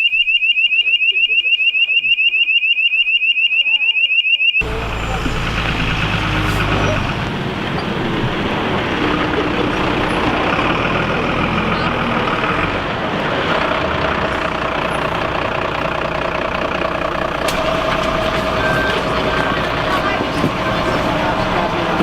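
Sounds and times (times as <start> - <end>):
truck engine idling: 4.6 - 22.0.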